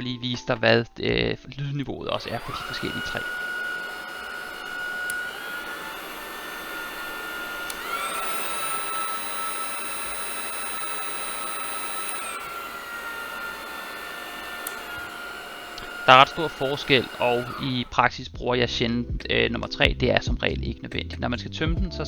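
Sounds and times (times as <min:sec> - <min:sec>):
handheld vacuum whining: 0:02.1 - 0:18.0.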